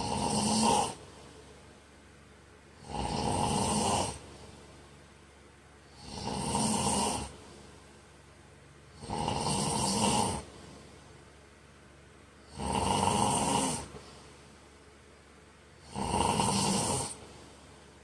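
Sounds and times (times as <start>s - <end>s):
man snoring: 0.0s - 1.1s, 2.8s - 4.3s, 5.9s - 7.4s, 8.9s - 10.6s, 12.4s - 14.0s, 15.8s - 17.4s.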